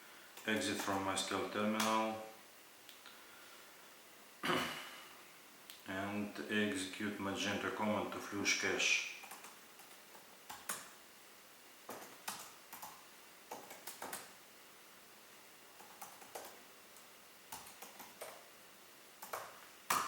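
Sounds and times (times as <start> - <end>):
keyboard keys clicking: 11.9 - 14.3, 15.8 - 16.6, 19.2 - 20.0.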